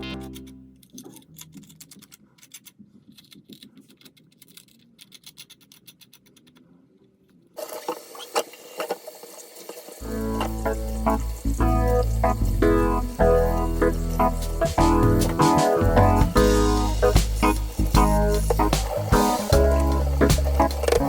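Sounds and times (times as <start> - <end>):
household objects clicking and scraping: 0.1 - 12.4, 16.8 - 21.0
steady hiss: 9.1 - 21.0.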